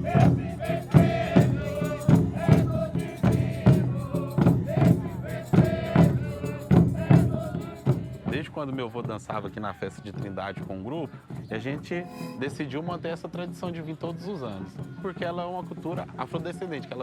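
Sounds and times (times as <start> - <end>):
group singing folk song: 0.0 - 8.9
drum beating: 0.0 - 14.2
shakers: 0.0 - 17.0.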